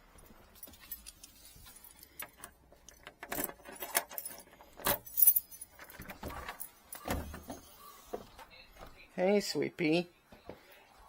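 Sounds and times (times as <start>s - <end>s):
keys jangling: 2.9s - 7.1s.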